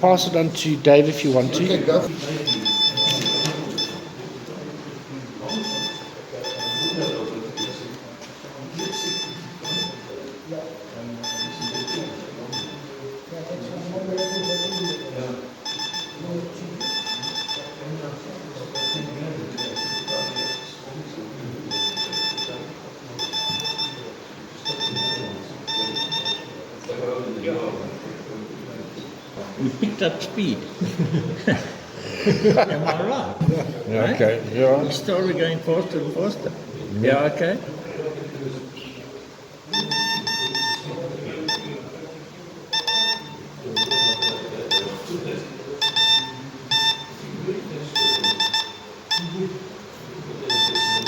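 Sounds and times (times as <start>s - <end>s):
morse code beeping: 1.1s - 4.3s, 5.4s - 7.9s, 8.8s - 10.1s, 11.2s - 12.9s, 14.1s - 17.8s, 18.7s - 20.8s, 21.7s - 26.6s, 39.7s - 41.8s, 42.7s - 45.1s, 45.8s - 47.2s, 47.9s - 49.4s, 50.4s - 51.0s.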